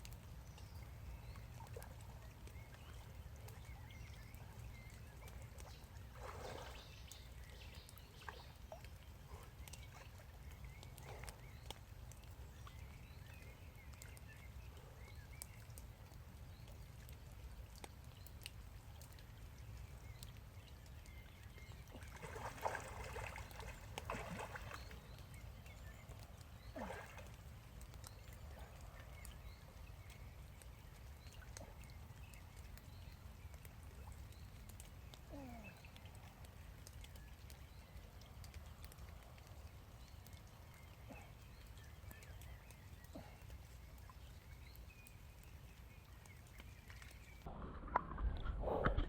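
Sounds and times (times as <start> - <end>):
water sloshing: 0.9 - 11.8, 21.5 - 28.5
light ticks: 9.6 - 21.2, 27.2 - 45.6.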